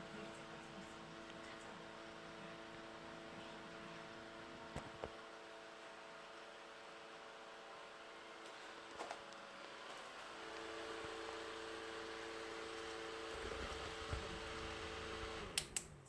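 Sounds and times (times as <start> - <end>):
small electric fan humming: 0.0 - 16.0.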